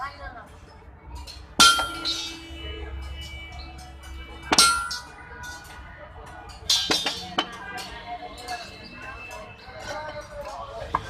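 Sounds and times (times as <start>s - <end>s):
metal struck ringing: 1.6s - 5.2s.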